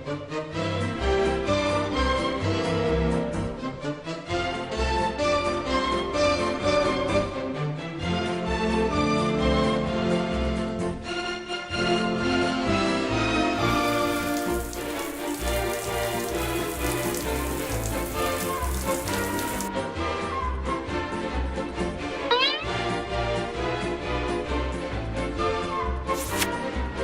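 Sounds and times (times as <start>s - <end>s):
instrumental music with strings: 0.0s - 18.2s
steady rain falling: 13.6s - 19.7s.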